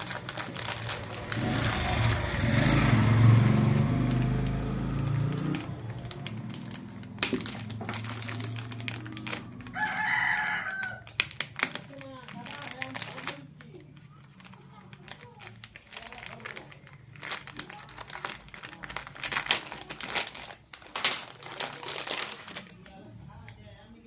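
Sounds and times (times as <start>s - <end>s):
rooster crowing: 9.6s - 11.1s.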